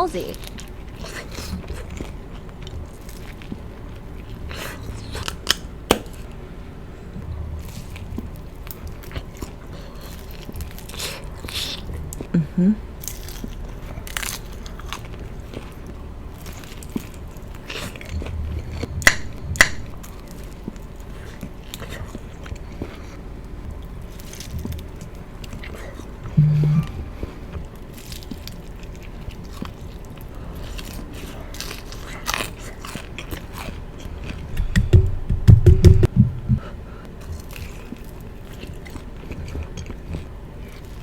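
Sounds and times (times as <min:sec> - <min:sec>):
wet chewing: 0:00.0 - 0:06.4, 0:07.2 - 0:35.2, 0:35.9 - 0:41.0
crunches of biting fried food: 0:00.3 - 0:06.4, 0:07.6 - 0:34.6, 0:37.1 - 0:41.0.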